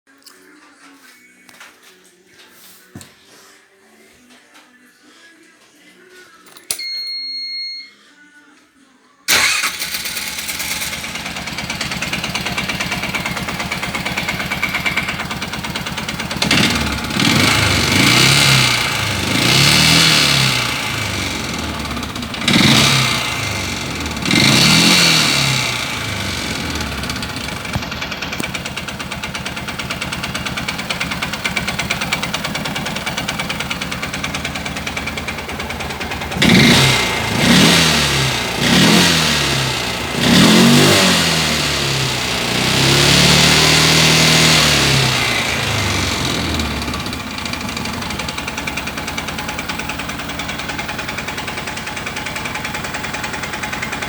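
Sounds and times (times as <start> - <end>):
short electronic beep: 6.8 - 8.0
engine knocking: 9.3 - 54.0
engine revving: 9.3 - 54.0
engine starting and idling: 9.3 - 54.0.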